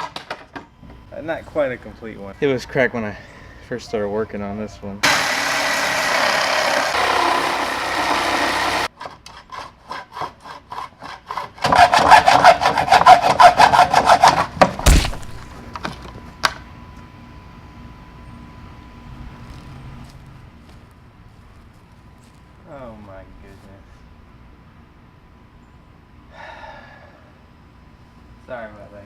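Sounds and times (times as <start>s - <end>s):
reciprocating saw cutting nails: 5.0s - 14.6s
heavy thump: 14.8s - 15.6s.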